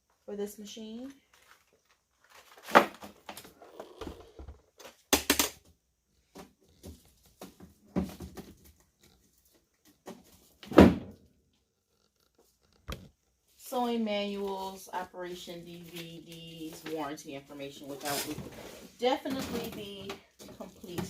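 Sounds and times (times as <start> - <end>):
packaging rustling and knocking: 6.4 - 10.4.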